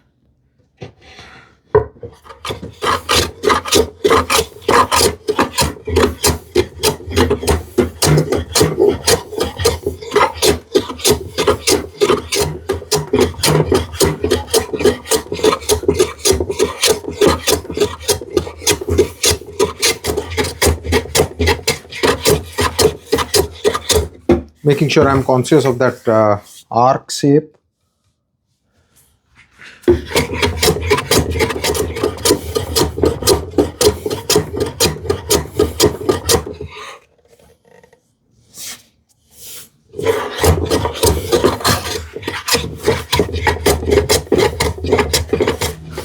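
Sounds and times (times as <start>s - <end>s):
hand tool rasping wood: 1.8s - 26.7s, 29.8s - 37.0s, 39.8s - 46.0s.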